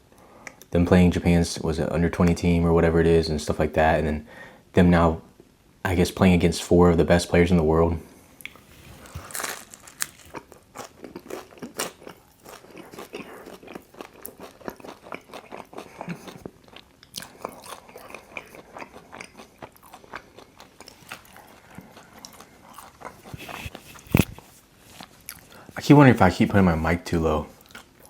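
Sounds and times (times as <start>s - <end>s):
person chewing crunchy food: 8.4s - 25.7s, 27.6s - 28.0s.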